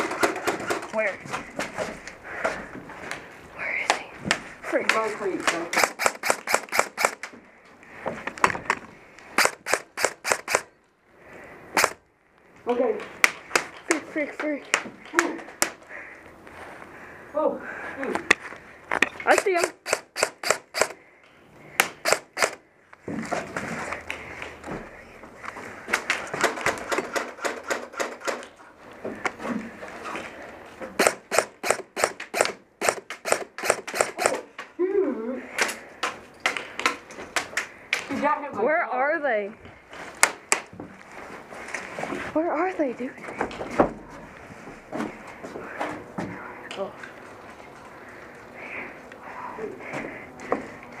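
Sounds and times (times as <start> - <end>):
airsoft guns firing: 0.0 - 0.8, 5.5 - 7.3, 9.4 - 10.7, 11.8 - 12.0, 19.3 - 21.0, 21.8 - 22.6, 26.4 - 28.4, 31.0 - 34.5.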